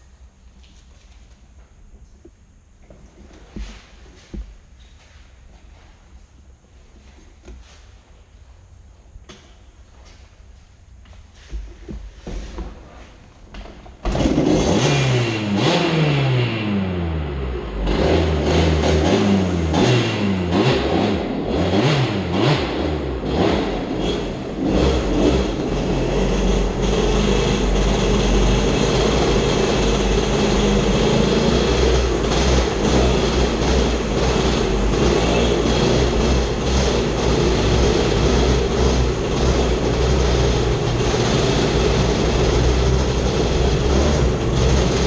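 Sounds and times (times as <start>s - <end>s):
off-road vehicle engine revving: 14.0s - 45.0s.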